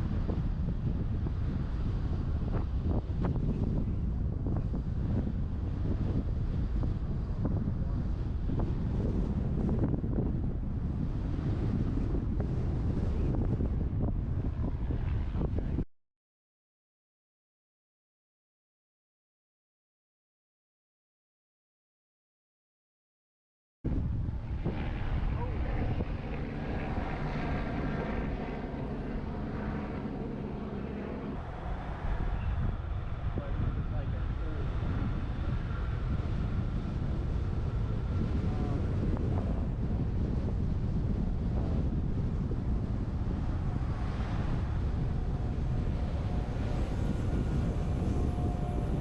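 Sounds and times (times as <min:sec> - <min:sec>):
wind and road noise: 0:00.0 - 0:15.9, 0:23.9 - 0:49.0
truck engine rumble: 0:24.1 - 0:49.0.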